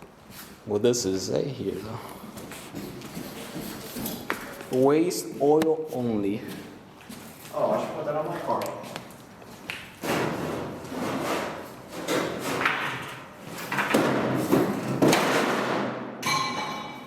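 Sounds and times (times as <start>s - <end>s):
objects scraping and knocking: 10.0s - 17.0s
short metallic ring: 16.2s - 17.0s.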